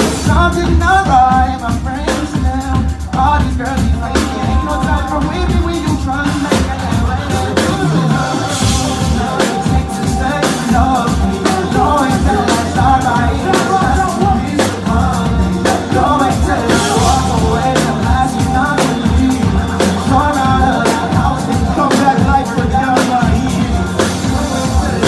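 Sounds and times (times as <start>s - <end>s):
loud music with drum beat: 0.0s - 25.0s
person singing: 0.0s - 25.0s.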